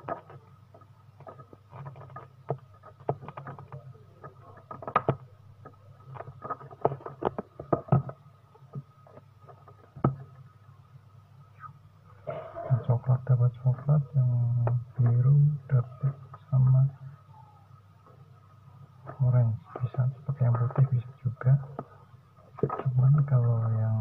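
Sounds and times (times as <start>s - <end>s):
clicks and taps of hands working: 0.0s - 10.3s
faint hum: 0.0s - 24.0s.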